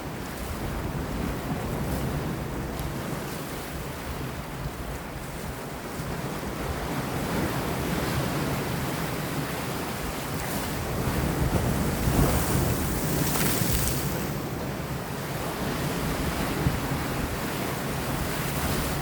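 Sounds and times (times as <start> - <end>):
wind: 0.0 - 19.0
sea waves washing against rocks: 6.2 - 19.0.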